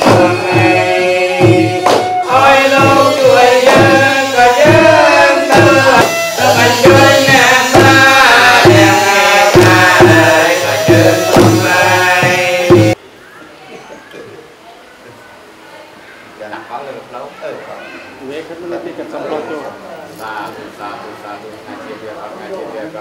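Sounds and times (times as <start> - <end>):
hand drum strokes: 0.0 - 13.0
sliding vocal melody: 0.0 - 13.0.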